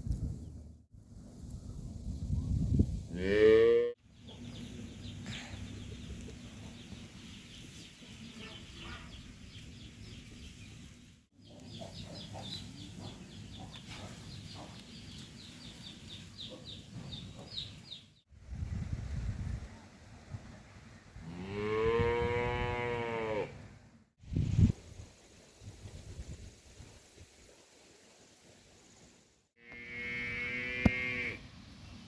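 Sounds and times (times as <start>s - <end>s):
chicks chirping: 11.4s - 18.2s.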